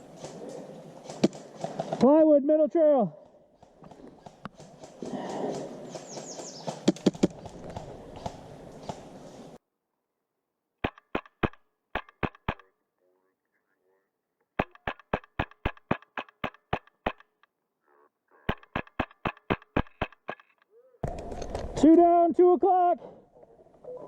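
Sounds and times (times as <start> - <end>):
airsoft rifle shots: 10.8 - 12.7, 14.6 - 17.4, 18.5 - 21.7.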